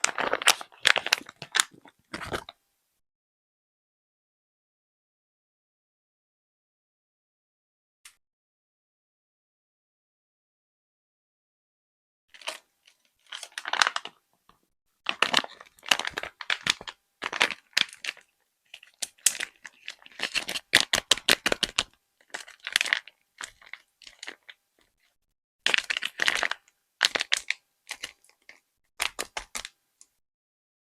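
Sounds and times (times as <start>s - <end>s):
paper squishy crinkling: 0.0s - 2.6s, 12.3s - 14.2s, 15.0s - 29.8s.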